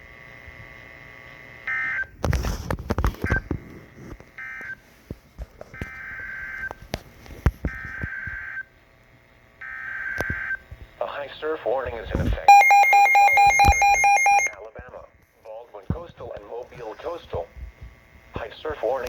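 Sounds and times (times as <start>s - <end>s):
data-like beeping tones: 12.5s - 14.5s.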